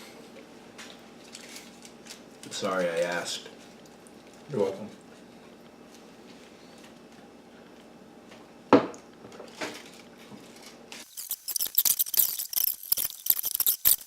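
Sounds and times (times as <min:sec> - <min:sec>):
knocks on a table: 0:08.7 - 0:09.0
wrapper crackling: 0:11.0 - 0:14.0.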